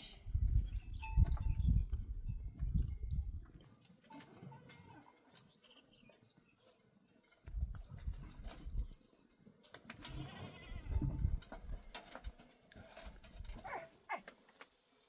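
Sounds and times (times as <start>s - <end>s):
goats or sheep bleating: 10.1s - 11.0s.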